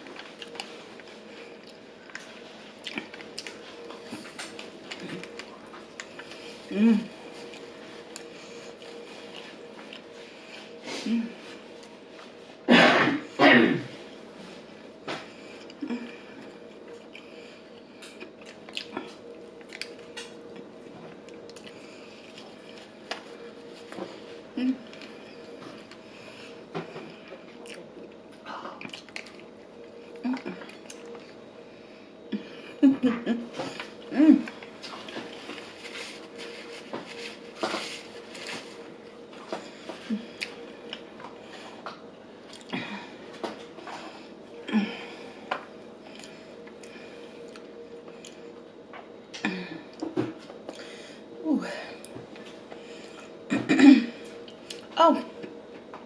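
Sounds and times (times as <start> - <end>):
person chewing food: 0.0 - 6.6, 15.3 - 31.4, 33.7 - 41.9, 42.5 - 42.7, 45.5 - 48.5, 54.2 - 54.9
closed-mouth hum: 0.0 - 56.0.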